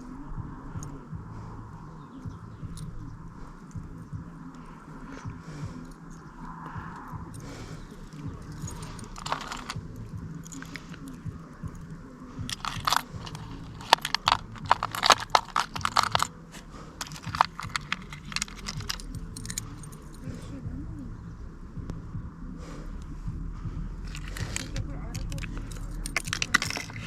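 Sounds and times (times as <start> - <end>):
small hard objects clicking: 8.0 - 11.8, 12.5 - 20.2, 24.0 - 27.0.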